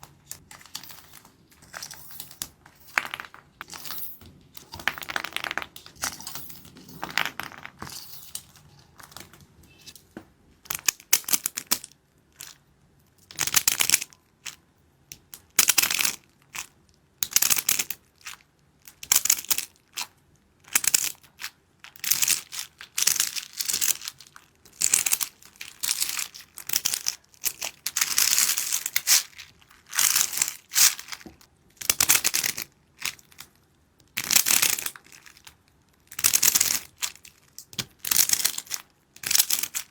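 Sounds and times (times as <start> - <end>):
crinkling and crushing: 21.4 - 31.5, 32.1 - 39.9.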